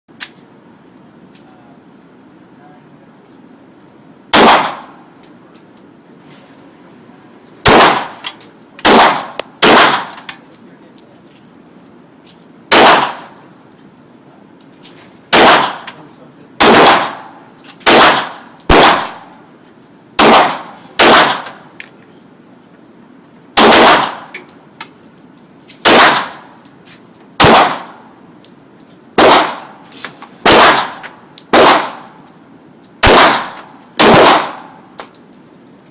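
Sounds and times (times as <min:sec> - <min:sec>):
pistol shots with echo: 0:04.3 - 0:05.0, 0:07.6 - 0:10.2, 0:12.7 - 0:13.4, 0:15.3 - 0:16.0, 0:16.6 - 0:19.3, 0:20.2 - 0:21.6, 0:23.6 - 0:24.4, 0:25.8 - 0:26.6, 0:27.4 - 0:28.1, 0:29.2 - 0:29.8, 0:30.4 - 0:32.2, 0:33.0 - 0:34.8.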